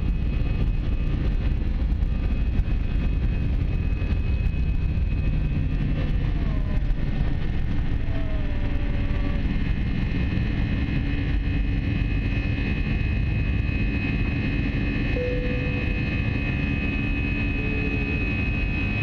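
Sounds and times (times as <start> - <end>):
airflow rumble: 0.0 - 19.0
jet engine drone: 0.0 - 19.0
faint gliding tones: 15.1 - 18.5.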